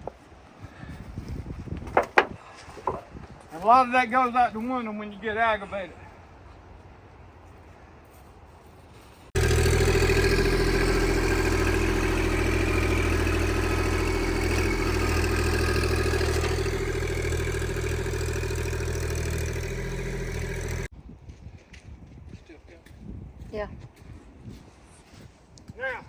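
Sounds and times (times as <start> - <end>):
chainsaw running: 9.4 - 20.9.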